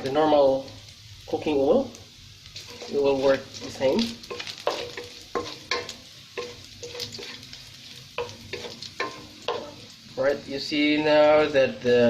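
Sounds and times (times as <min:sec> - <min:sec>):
garlic and onion sizzling in oil: 0:00.0 - 0:12.0
utensil scraping a pan: 0:02.6 - 0:09.8.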